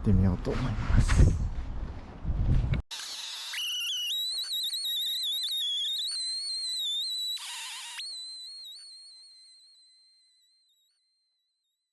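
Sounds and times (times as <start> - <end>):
high wavering whistle-like tone: 2.9 - 11.9.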